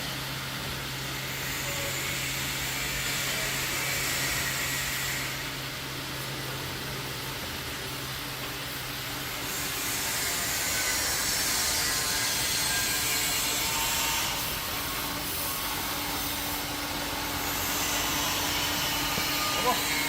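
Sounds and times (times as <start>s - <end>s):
bandsaw machine whirring: 9.3s - 20.0s.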